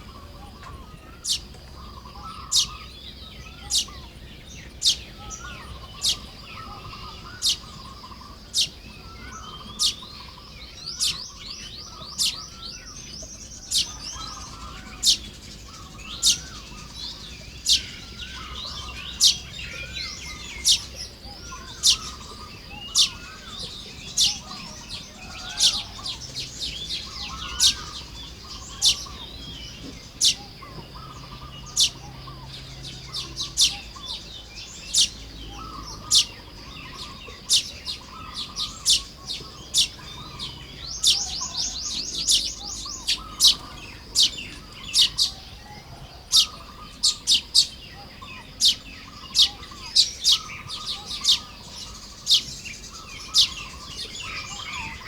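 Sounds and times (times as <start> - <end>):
birds chirping and chattering: 0.0 - 55.0
rapid buzzy bird trill: 4.7 - 55.0.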